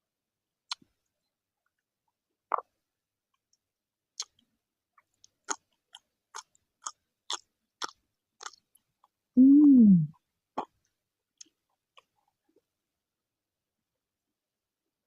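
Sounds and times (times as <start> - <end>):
wet chewing clicks: 5.0 - 8.8
person humming mmm: 9.4 - 10.1.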